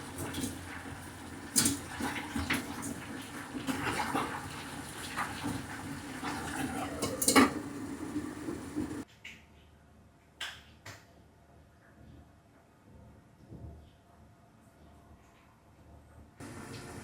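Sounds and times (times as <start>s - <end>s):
dishes and utensils clattering: 1.5s - 9.0s.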